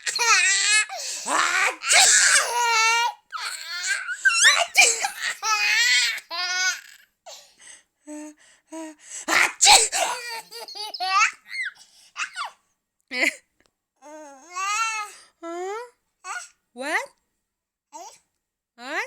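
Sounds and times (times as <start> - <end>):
baby laughing: 0.0 - 7.0, 9.3 - 12.5
person fake sneezing and coughing: 1.1 - 2.7, 4.3 - 5.5, 9.3 - 10.6.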